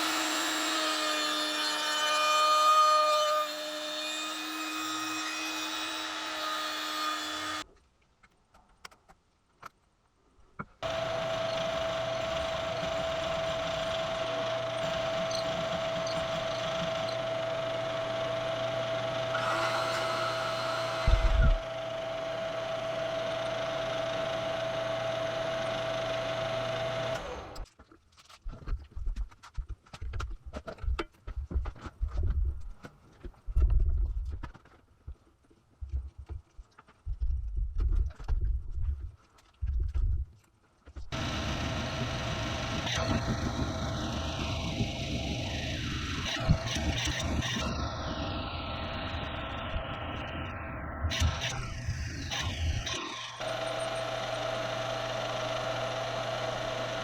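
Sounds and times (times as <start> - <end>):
power tool whining: 0.0 - 7.6, 10.8 - 27.6, 41.1 - 57.0.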